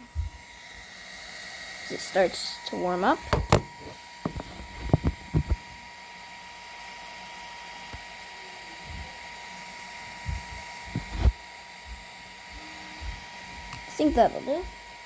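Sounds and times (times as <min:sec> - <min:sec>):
printer fan whirring: 0:00.0 - 0:15.0.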